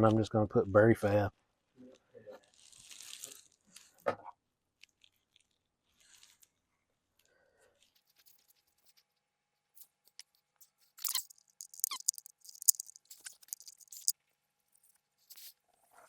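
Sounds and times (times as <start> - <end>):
crinkling handling noise: 9.9 - 14.1
short squeak: 11.0 - 12.3
sharp clicks: 11.0 - 14.1.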